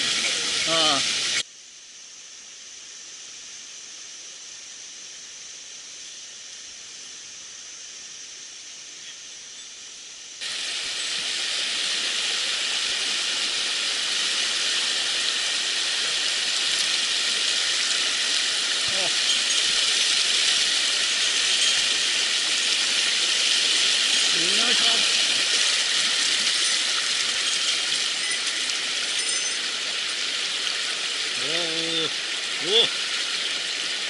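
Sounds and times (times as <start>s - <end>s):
stream water rushing: 10.4s - 34.0s.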